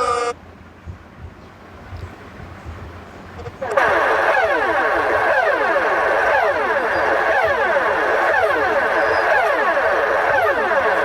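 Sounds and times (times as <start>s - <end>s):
alarm tones sliding downward: 3.6s - 11.0s.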